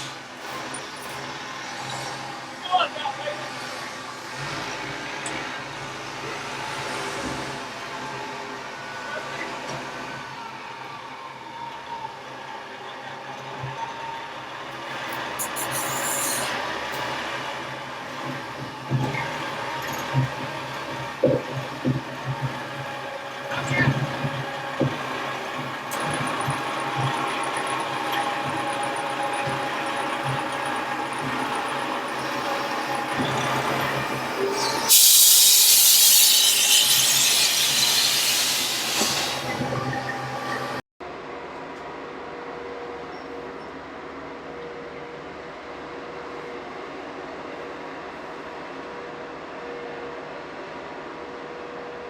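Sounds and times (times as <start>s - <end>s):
heavy machinery running: 0.0s - 9.7s, 14.4s - 40.8s
short hiss: 34.7s - 39.5s.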